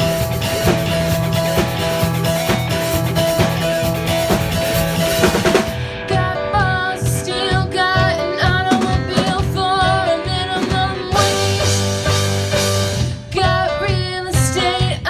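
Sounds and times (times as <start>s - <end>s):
rock band playing: 0.0s - 13.9s
person singing: 5.5s - 12.0s, 13.0s - 15.0s.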